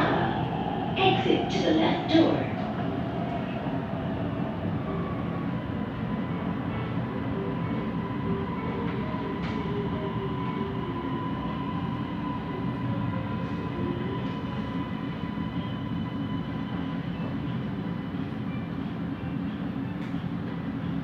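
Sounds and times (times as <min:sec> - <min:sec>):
train running gear rumble: 0:00.0 - 0:21.0.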